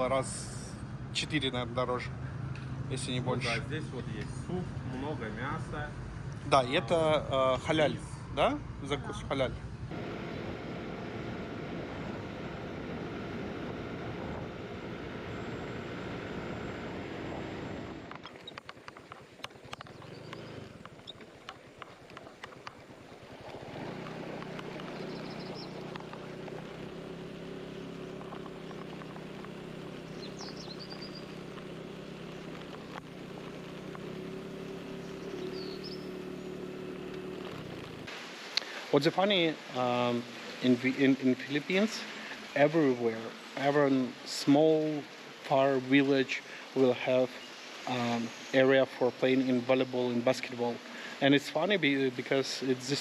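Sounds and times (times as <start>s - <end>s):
vehicle engine running: 0.0s - 38.1s.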